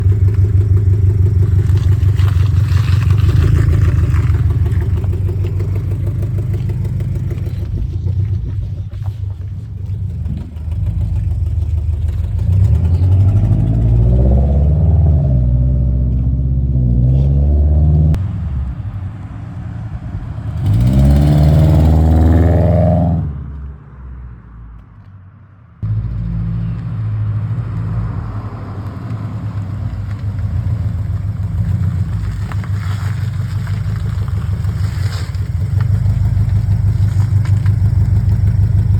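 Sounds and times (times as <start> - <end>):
exhaust leak ticking: 0.0 - 13.5, 29.1 - 38.9
car engine idling and revving: 0.0 - 38.9.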